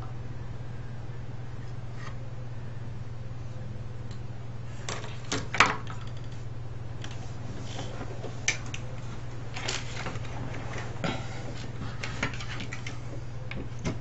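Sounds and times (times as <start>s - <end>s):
steady low hum: 0.0s - 14.0s
cassette recorder parts clicking and rattling: 4.8s - 6.4s, 8.4s - 14.0s.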